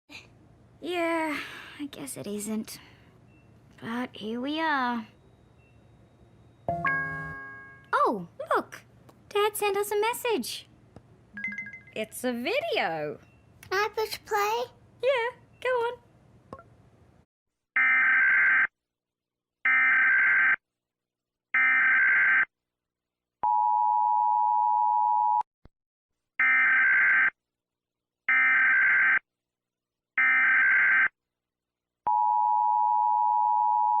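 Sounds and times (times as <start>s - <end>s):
two-tone alert signal: 6.7s - 8.0s, 11.4s - 12.0s.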